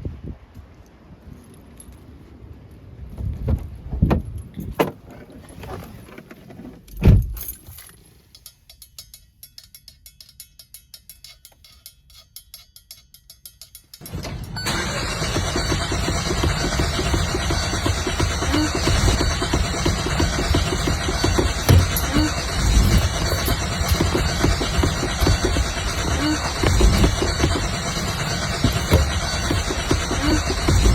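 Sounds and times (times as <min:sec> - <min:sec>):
car engine cranking: 0:14.0 - 0:30.9
loud steady noise: 0:14.2 - 0:30.9.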